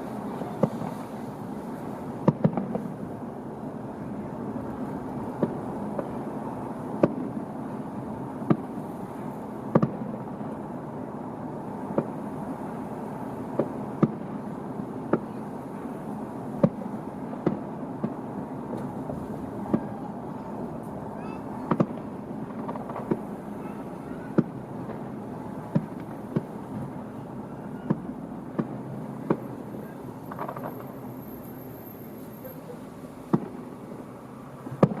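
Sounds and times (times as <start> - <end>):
fireworks bangs: 0.0 - 10.7, 11.5 - 35.0
steady background noise: 0.0 - 35.0.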